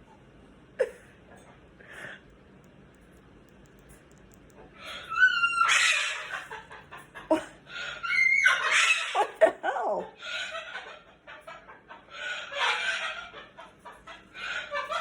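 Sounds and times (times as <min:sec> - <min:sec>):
cockatoo screeching: 0:04.9 - 0:06.4, 0:07.8 - 0:09.4.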